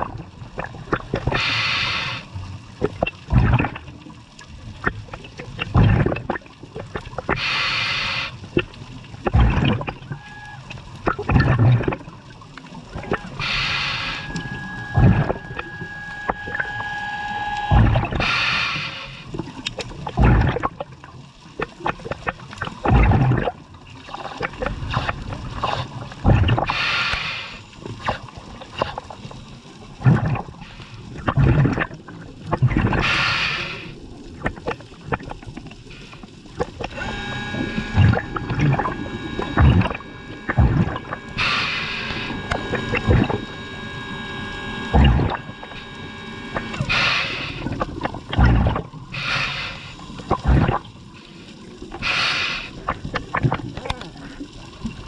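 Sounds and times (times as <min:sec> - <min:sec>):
faint steady whine: 0:00.0 - 0:04.5, 0:07.0 - 0:20.5, 0:24.3 - 0:55.0
exhaled bubbles rushing underwater: 0:00.0 - 0:55.0
low thumps: 0:17.7 - 0:18.2, 0:37.9 - 0:41.2.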